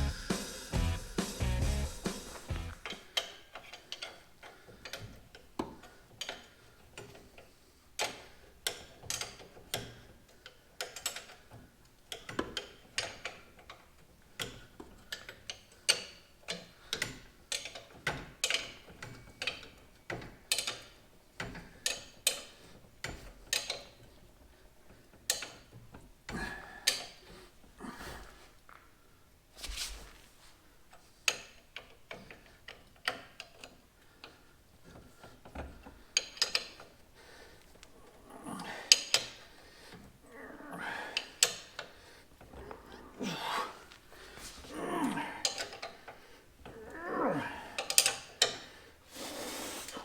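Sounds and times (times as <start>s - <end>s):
hand tools clicking on parts: 2.3s - 26.1s, 31.3s - 38.0s, 38.9s - 40.2s, 45.4s - 47.0s, 47.7s - 48.7s.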